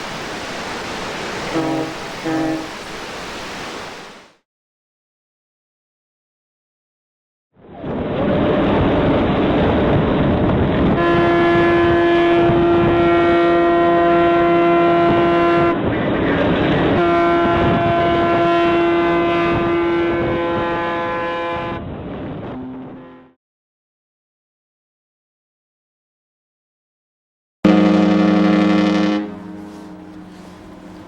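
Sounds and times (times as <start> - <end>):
ship horn blasts: 0.0 - 3.1, 10.7 - 15.8, 16.9 - 23.4, 27.6 - 31.0.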